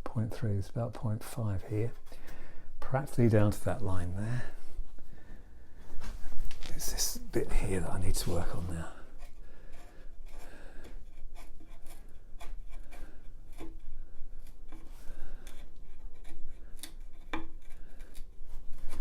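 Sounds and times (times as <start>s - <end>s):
chisel scraping wood: 6.7s - 19.0s.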